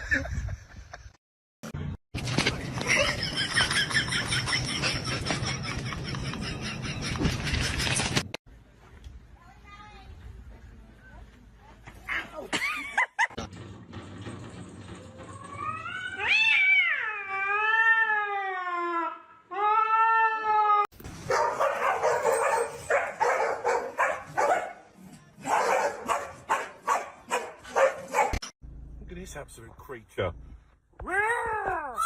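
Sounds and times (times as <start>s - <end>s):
cat yowling: 15.6s - 20.8s.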